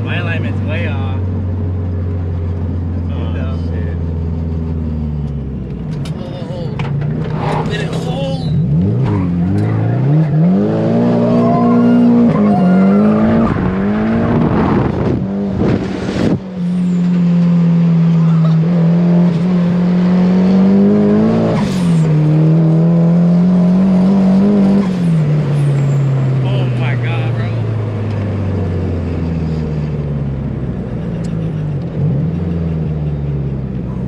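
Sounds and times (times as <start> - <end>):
turbocharged car engine revving: 6.8 - 34.0
rush of noise: 10.4 - 16.5.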